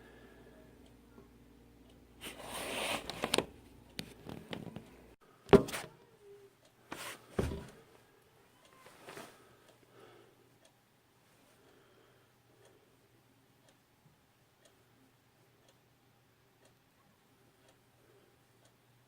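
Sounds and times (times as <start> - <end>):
rustling: 2.2 - 4.9, 6.9 - 7.9, 8.7 - 9.7
knocks and thumps: 7.4 - 7.8.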